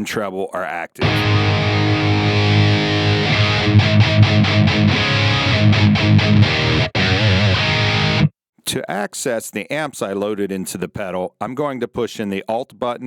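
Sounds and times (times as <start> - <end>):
distorted electric guitar chords: 1.0 - 8.3.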